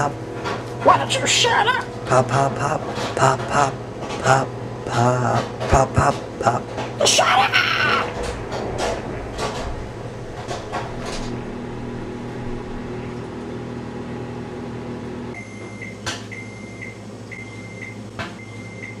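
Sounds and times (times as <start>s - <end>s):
microwave oven humming: 0.0s - 19.0s
microwave beeps: 15.3s - 19.0s.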